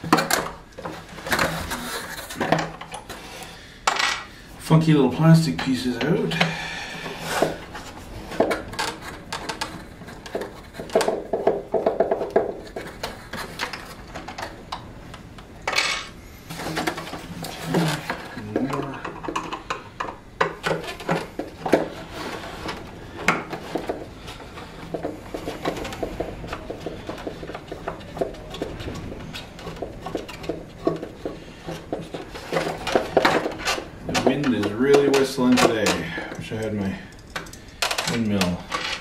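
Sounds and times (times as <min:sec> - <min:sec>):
metal and plastic parts clinking: 0:25.6 - 0:39.0.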